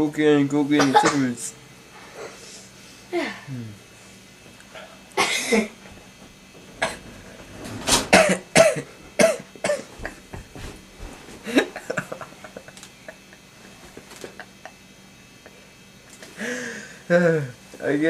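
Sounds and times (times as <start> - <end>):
person coughing: 0.8 - 1.4, 5.2 - 5.8, 6.8 - 7.0, 8.1 - 10.2.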